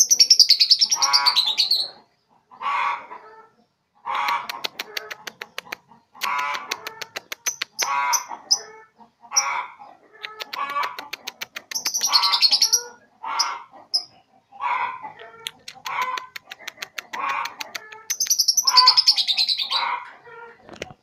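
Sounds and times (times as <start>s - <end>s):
bird harsh chattering: 0.0s - 2.0s, 4.2s - 8.7s, 10.2s - 14.2s, 15.4s - 20.0s
bird high chirps: 0.0s - 2.0s, 10.3s - 14.2s, 15.2s - 19.9s
bird clicking: 4.3s - 8.0s, 10.2s - 12.2s, 15.4s - 18.5s.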